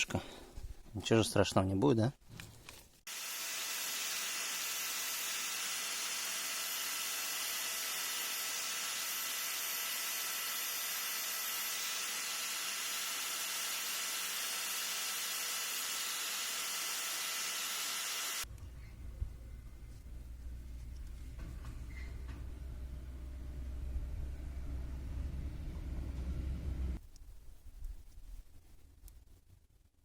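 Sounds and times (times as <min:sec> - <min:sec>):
angle grinder grinding metal: 0:03.1 - 0:18.5.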